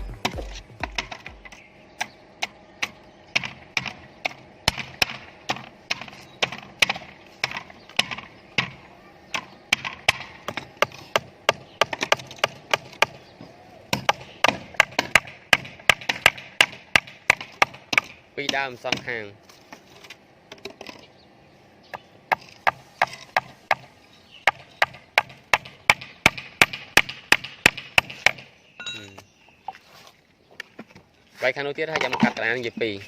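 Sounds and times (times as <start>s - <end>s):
hammer striking nails into wood: 9.7s - 13.2s, 13.9s - 19.0s, 22.3s - 28.5s.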